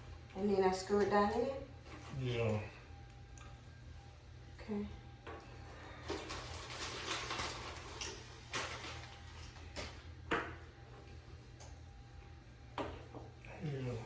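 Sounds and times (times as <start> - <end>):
steady low hum: 0.0 - 14.0
furniture parts scraping and rustling: 5.3 - 11.8.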